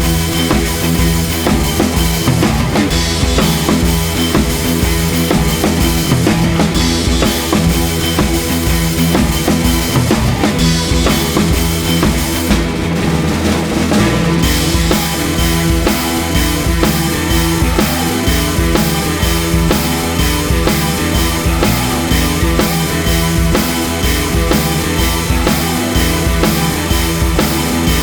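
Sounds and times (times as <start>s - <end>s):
rock music with driving drums: 0.0s - 28.0s.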